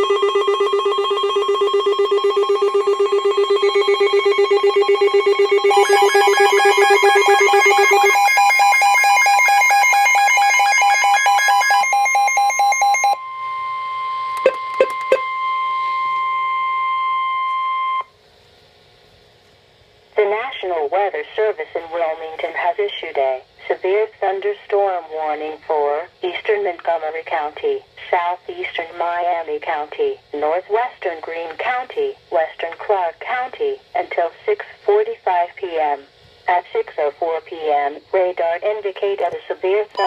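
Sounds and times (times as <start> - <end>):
pulsing electronic alarm: 0.0 - 18.1
steady warning tone: 0.0 - 18.1.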